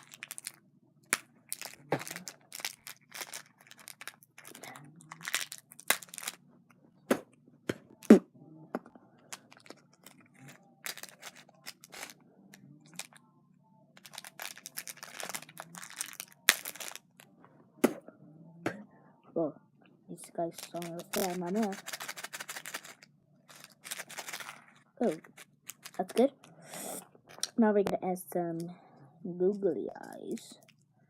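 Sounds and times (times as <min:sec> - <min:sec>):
plastic packaging crinkling: 0:00.0 - 0:06.4, 0:09.3 - 0:12.2, 0:12.9 - 0:13.2, 0:14.0 - 0:17.2, 0:20.4 - 0:26.3.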